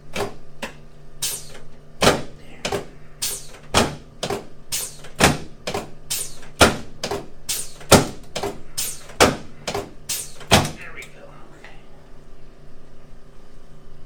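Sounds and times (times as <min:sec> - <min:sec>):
sharp knocks: 0:02.0 - 0:10.8.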